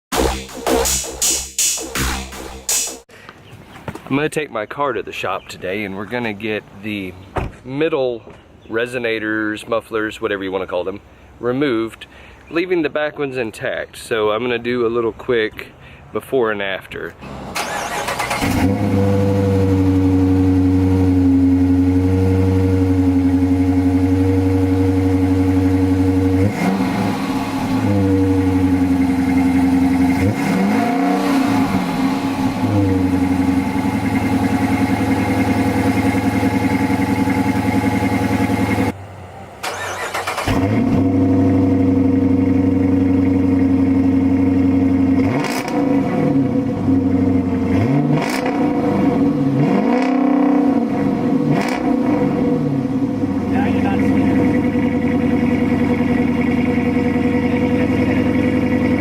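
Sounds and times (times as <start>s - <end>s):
car engine idling and revving: 17.2s - 59.0s.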